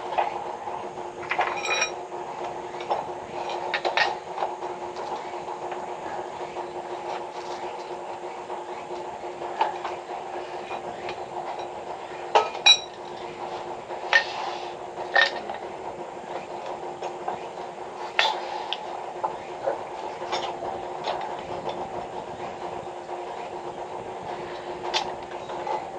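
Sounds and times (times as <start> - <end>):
steady mechanical hum: 0.0 - 25.9
metal clinks and knocks: 1.3 - 2.0, 11.5 - 13.0.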